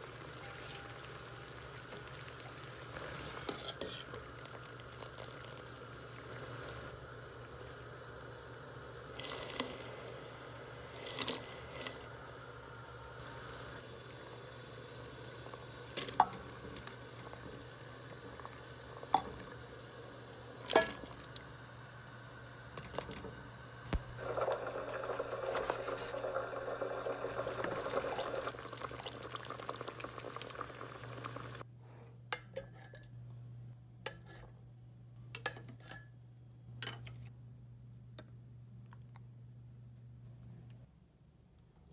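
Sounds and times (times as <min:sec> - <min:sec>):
running or pouring liquid: 0:00.0 - 0:10.1, 0:13.2 - 0:21.4, 0:24.0 - 0:31.6.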